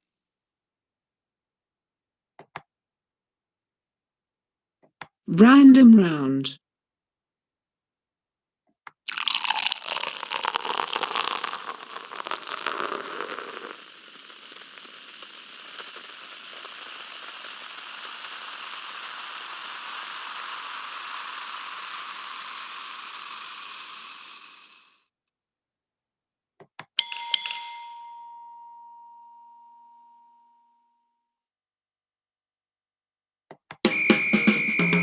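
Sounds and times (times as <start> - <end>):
click: 2.4 - 2.7
liquid splashing and crackling: 9.1 - 19.6.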